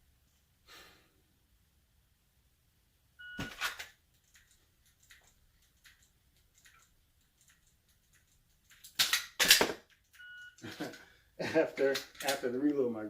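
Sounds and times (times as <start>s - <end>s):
pistol drawn from holster: 3.4s - 4.0s, 8.9s - 9.9s.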